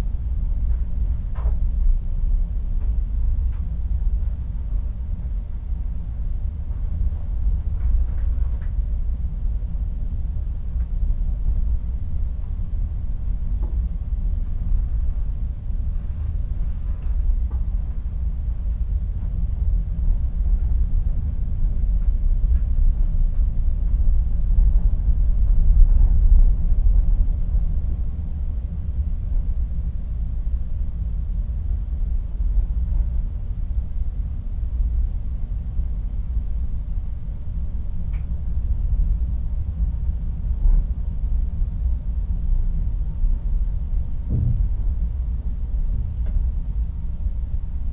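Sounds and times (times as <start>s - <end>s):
muffled sea: 0.0s - 47.9s
ship engine and hull rumble: 0.0s - 47.9s
faint light ticks: 38.1s - 38.3s
ship engine rumble: 43.8s - 47.9s.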